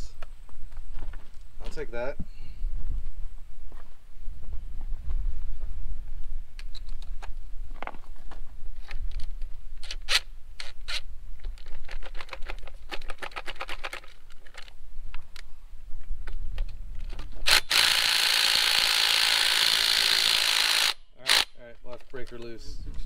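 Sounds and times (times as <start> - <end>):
ratchet clicking: 17.5 - 21.5.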